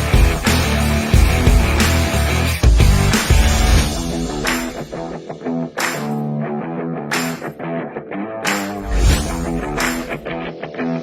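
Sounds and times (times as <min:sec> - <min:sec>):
drum beat: 0:00.0 - 0:05.2, 0:08.8 - 0:10.5
rock music with electric guitar: 0:00.0 - 0:11.0.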